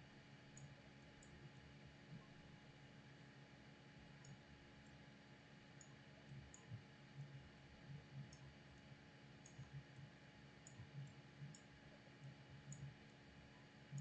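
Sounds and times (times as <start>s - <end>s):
quiet background hum: 0.0s - 14.0s
computer mouse clicks: 4.2s - 4.4s, 5.8s - 7.3s, 9.4s - 9.8s, 10.6s - 13.0s, 13.6s - 14.0s.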